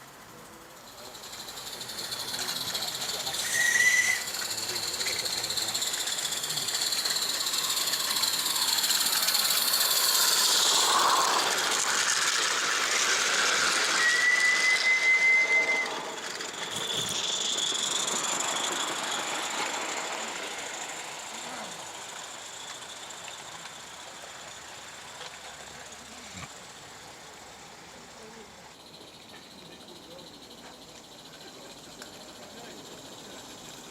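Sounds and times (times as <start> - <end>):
steam locomotive hiss: 0.0 - 33.9
steam whistle blast: 3.3 - 4.4, 14.0 - 16.1.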